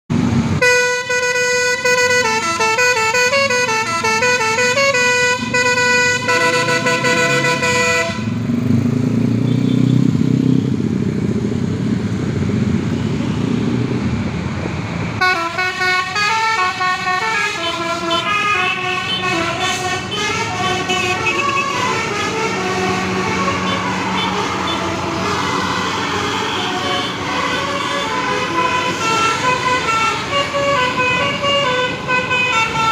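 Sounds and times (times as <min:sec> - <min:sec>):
melodic bus air horn: 0:00.6 - 0:08.4, 0:15.2 - 0:32.9.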